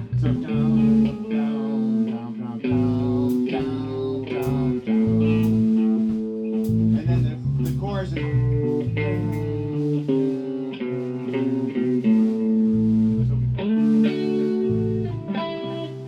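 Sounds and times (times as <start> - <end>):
bass guitar: 0.0 - 16.0
guitar chords: 0.0 - 16.0.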